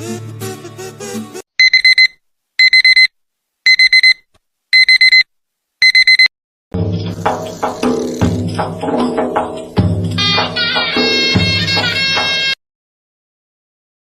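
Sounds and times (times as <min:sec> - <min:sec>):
music: 0:00.0 - 0:01.4, 0:06.8 - 0:12.6
electronic alarm beeping: 0:01.6 - 0:03.1, 0:03.7 - 0:04.2, 0:04.8 - 0:05.2, 0:05.8 - 0:06.3.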